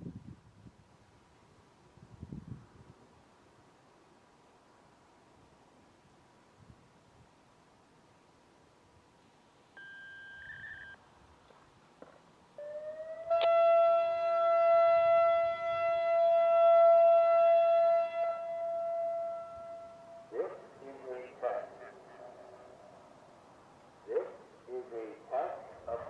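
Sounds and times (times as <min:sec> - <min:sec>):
electronic warning siren: 0:09.8 - 0:11.0, 0:12.6 - 0:20.3
high electronic beep: 0:09.8 - 0:11.0.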